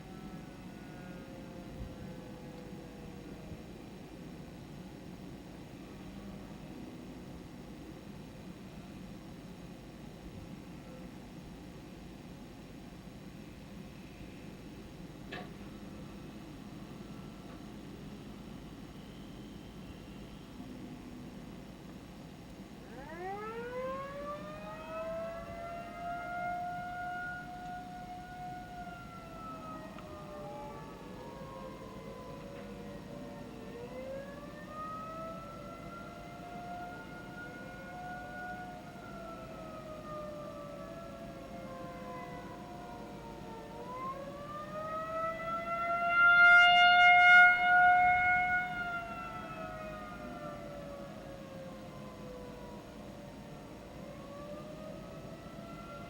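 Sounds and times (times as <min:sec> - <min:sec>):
second siren tone rising: 0:00.0 - 0:03.5, 0:22.9 - 0:56.0.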